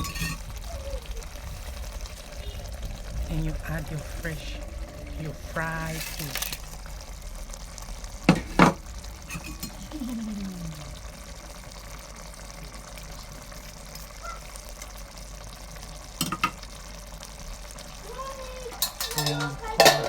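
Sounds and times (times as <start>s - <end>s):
soup sizzling and bubbling: 0.0s - 20.0s
knocks against a pot: 8.3s - 8.8s, 18.8s - 20.0s.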